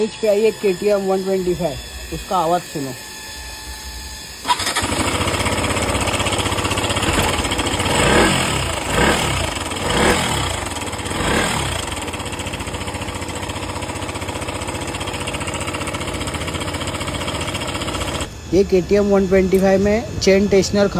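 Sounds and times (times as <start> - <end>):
motorcycle engine revving and idling: 3.6 - 20.9
engine knocking: 4.5 - 18.3.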